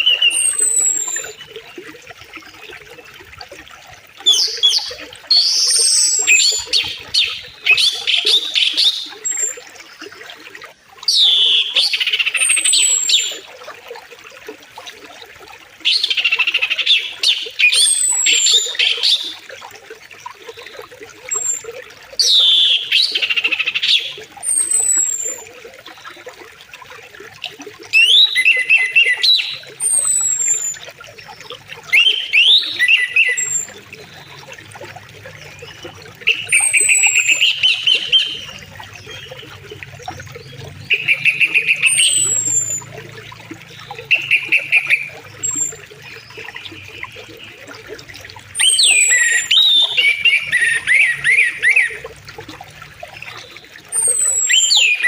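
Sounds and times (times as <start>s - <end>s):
river flowing: 0.0s - 55.0s
birds calling: 28.0s - 34.6s, 35.3s - 48.0s, 48.6s - 52.1s.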